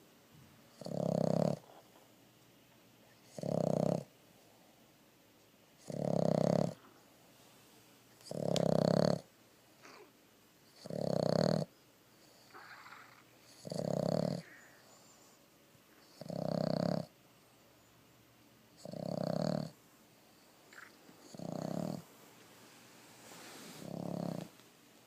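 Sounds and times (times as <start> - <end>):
dog snoring: 0.7 - 1.7, 3.3 - 4.1, 5.8 - 6.9, 8.2 - 10.1, 10.7 - 15.1, 16.0 - 17.2, 18.8 - 19.8, 20.7 - 22.1, 23.3 - 24.6.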